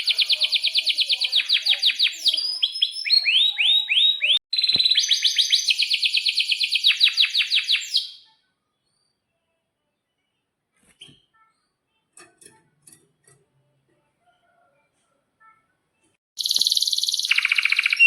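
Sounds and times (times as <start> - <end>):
canary singing trills: 0.0 - 8.4, 16.4 - 18.0.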